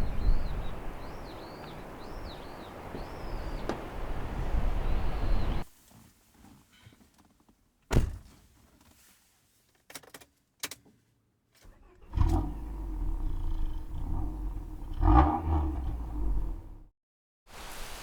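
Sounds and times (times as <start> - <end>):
thump: 7.9 - 8.4
car engine starting and running: 11.7 - 16.9.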